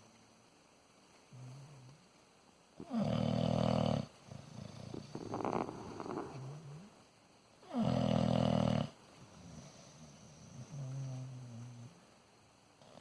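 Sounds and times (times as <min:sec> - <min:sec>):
deep snoring: 0:02.8 - 0:06.9, 0:07.7 - 0:12.0
rasping breath: 0:04.8 - 0:06.6.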